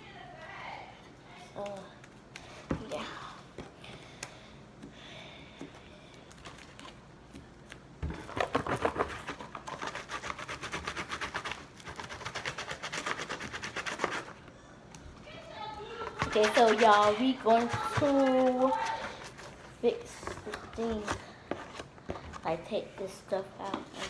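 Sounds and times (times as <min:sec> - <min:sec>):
utensil scraping plastic container: 0:16.0 - 0:22.6.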